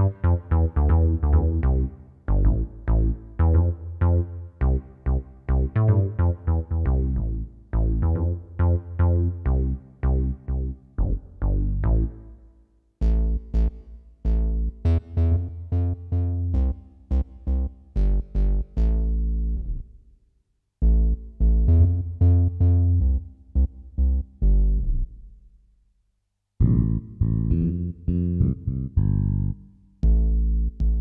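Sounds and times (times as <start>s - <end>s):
electronic keyboard notes: 0.0s - 12.4s.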